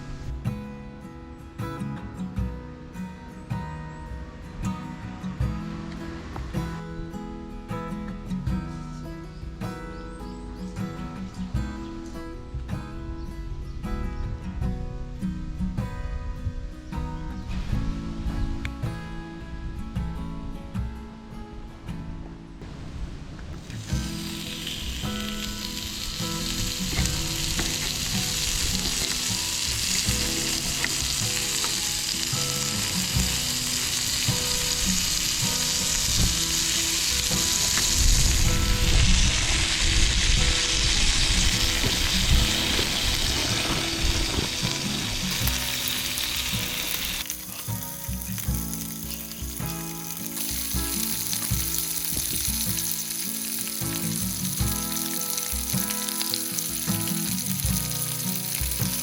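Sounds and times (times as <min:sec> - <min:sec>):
steak sizzling: 0:23.7 - 0:59.0.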